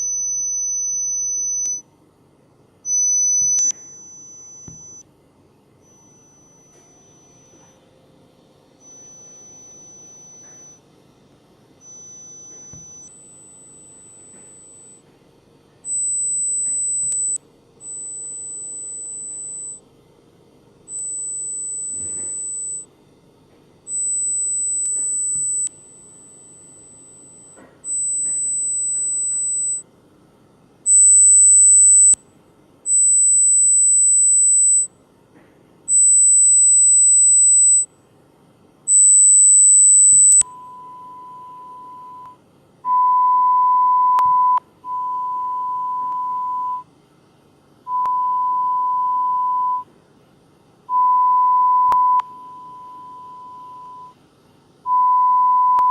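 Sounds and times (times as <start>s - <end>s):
high pure-tone beeps: 0.0s - 1.8s, 2.9s - 5.0s, 5.8s - 7.8s, 8.8s - 15.0s, 15.8s - 19.8s, 20.8s - 22.9s, 23.9s - 29.8s, 30.9s - 32.2s, 32.9s - 34.9s, 35.9s - 37.9s, 38.9s - 46.9s, 47.9s - 49.9s, 50.9s - 54.2s, 54.9s - 55.9s.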